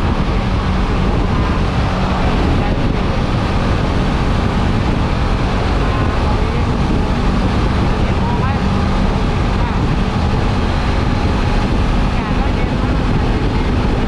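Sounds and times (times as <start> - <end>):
motorcycle engine drone: 0.0 - 14.0
wind rushing over microphone: 0.0 - 14.0.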